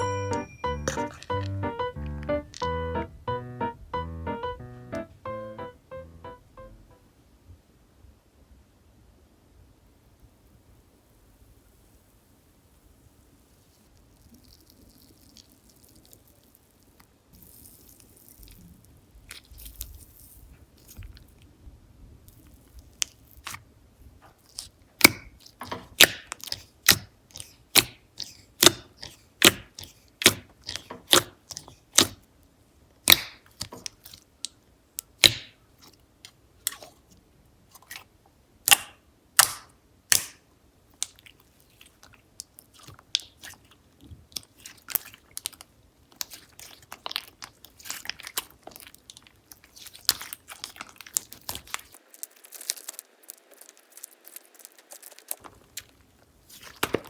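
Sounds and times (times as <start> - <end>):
slime squeezed by hand: 13.5 - 21.4, 44.3 - 57.0
slime popping clicks: 38.7 - 40.4.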